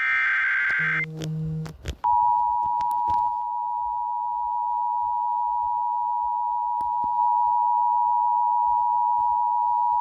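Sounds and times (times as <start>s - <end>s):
two-tone alert tone: 0.0s - 2.8s.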